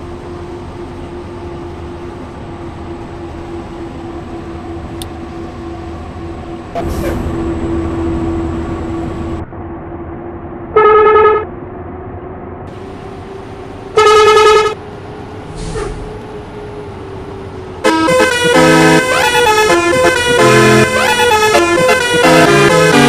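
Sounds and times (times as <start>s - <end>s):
bus running noise: 0.0s - 23.0s
bus horn blasts and melody: 10.8s - 11.5s, 13.9s - 14.8s, 17.8s - 23.0s.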